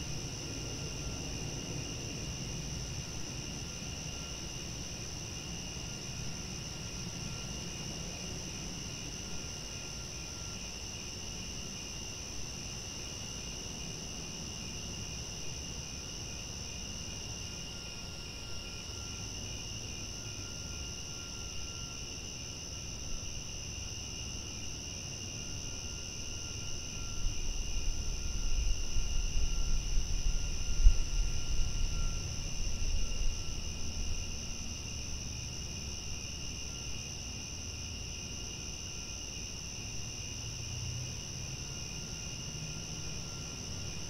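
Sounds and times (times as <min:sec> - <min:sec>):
crickets chirring: 0:00.0 - 0:44.0
low rumbling noise: 0:27.2 - 0:35.2.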